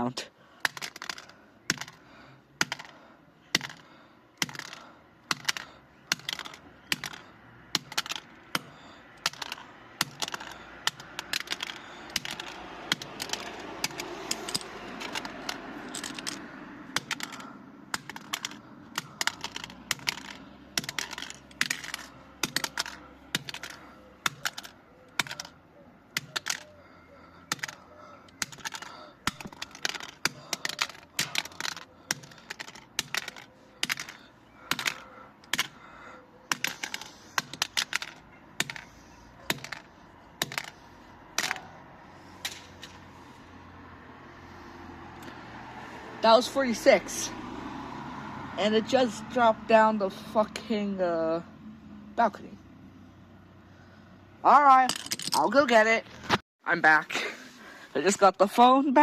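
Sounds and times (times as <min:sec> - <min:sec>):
wrench striking plastic phone: 0:04.4 - 0:25.5, 0:26.2 - 0:26.7, 0:27.5 - 0:35.8, 0:36.5 - 0:38.9, 0:39.5 - 0:40.8.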